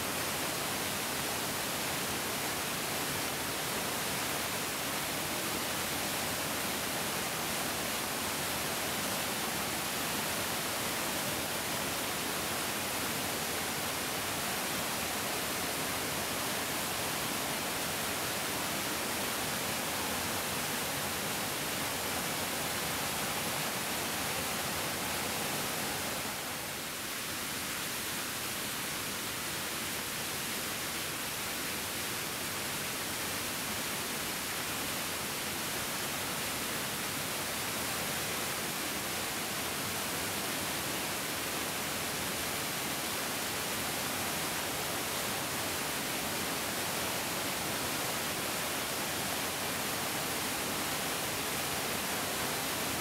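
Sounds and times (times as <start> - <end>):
mountain stream rushing: 0.0 - 53.0.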